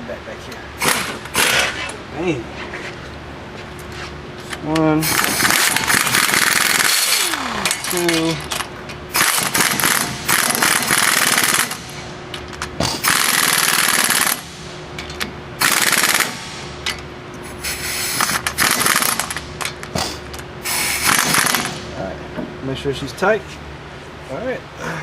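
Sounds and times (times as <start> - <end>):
impact wrench hammering: 9.1 - 12.0, 12.8 - 17.0, 20.9 - 21.9.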